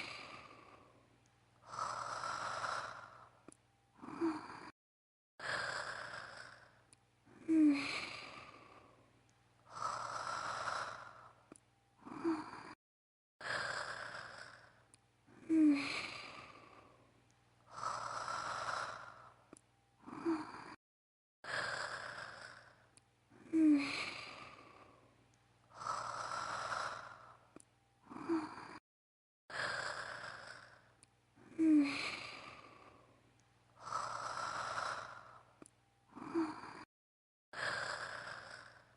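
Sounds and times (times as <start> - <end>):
breathy exhales and sighs: 0.0 - 4.8, 5.4 - 12.8, 13.4 - 20.8, 21.4 - 28.8, 29.5 - 36.9, 37.5 - 38.9
woman acting snoring: 1.7 - 3.4, 4.0 - 4.8, 5.4 - 6.7, 7.4 - 8.8, 12.0 - 12.8, 13.4 - 14.8, 15.4 - 16.9, 20.0 - 20.8, 21.5 - 22.8, 23.4 - 24.9, 28.0 - 28.8, 29.5 - 33.0, 36.1 - 36.9, 37.6 - 38.9.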